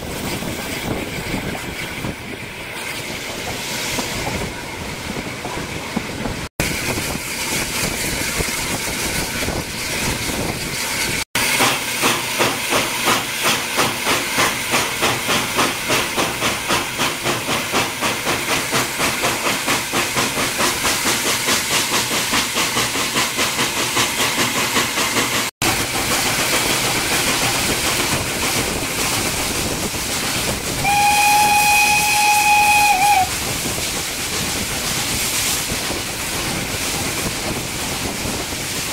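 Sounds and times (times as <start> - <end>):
rail noise: 0.0 - 38.9
steam hiss: 0.0 - 38.9
steam locomotive chuffing: 0.0 - 38.9
steam whistle: 30.8 - 33.4.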